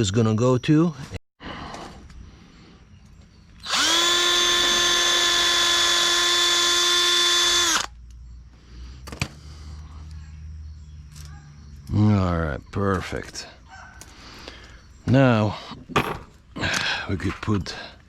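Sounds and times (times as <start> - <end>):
power drill whining: 3.6 - 7.9.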